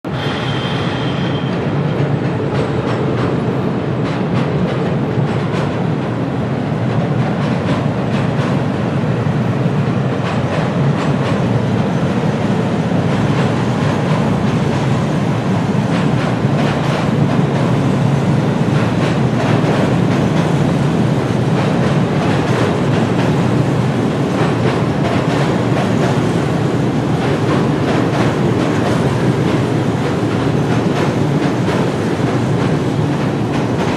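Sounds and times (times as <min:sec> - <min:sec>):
train rumbling on track: 0:00.0 - 0:33.9
wheels clacking over rail joints: 0:12.5 - 0:33.9.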